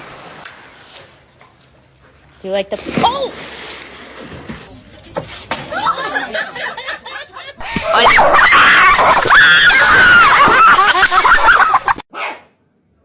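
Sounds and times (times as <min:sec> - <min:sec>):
person laughing and shrieking: 0:07.6 - 0:12.0.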